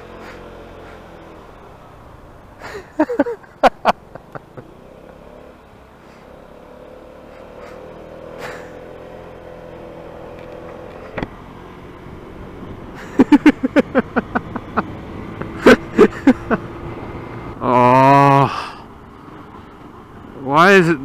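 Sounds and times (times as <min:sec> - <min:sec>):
sharp knocks and pops: 0:10.4 - 0:11.4.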